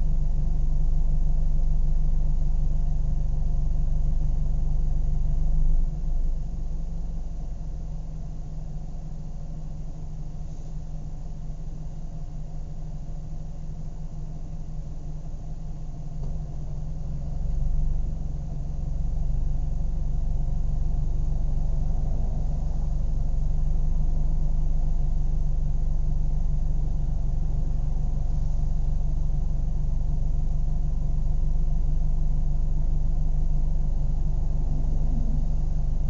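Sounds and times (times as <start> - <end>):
car engine idling: 0.0 - 36.0.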